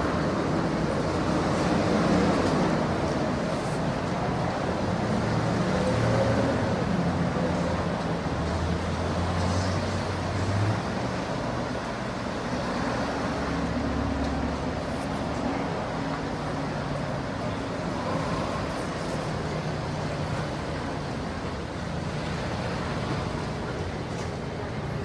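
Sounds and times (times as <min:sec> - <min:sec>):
low rumble of road traffic: 0:00.0 - 0:25.0.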